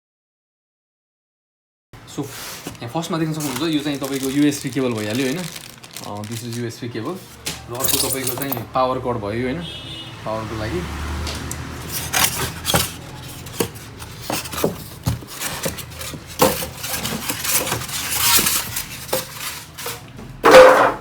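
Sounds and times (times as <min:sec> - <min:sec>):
plastic wrapping rustling: 0:02.1 - 0:08.7, 0:11.4 - 0:20.1
packaging knocking and clinking: 0:02.6 - 0:08.6, 0:11.8 - 0:20.9.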